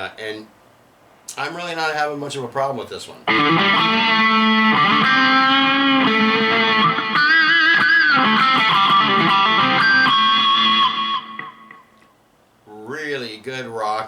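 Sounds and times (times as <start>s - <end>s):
electric guitar through amplifier: 3.3s - 12.1s.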